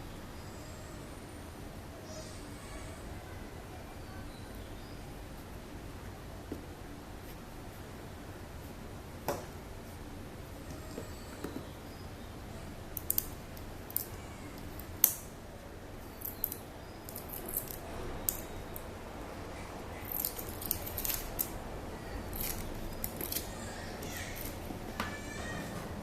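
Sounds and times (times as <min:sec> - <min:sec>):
packaging clicks and snips: 0:22.3 - 0:24.6.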